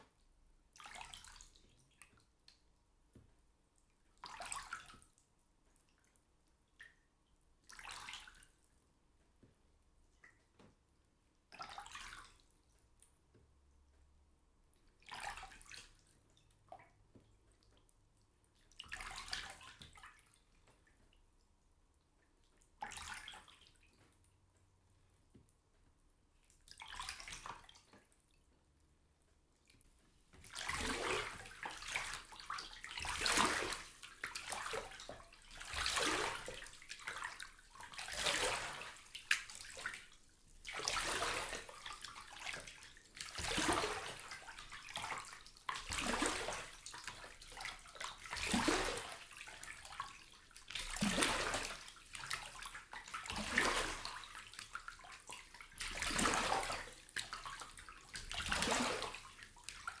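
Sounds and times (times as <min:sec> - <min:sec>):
bath water sloshing: 0:07.6 - 0:08.4, 0:15.0 - 0:15.8, 0:18.6 - 0:20.9, 0:22.6 - 0:24.2, 0:26.6 - 0:27.9, 0:29.6 - 1:00.0.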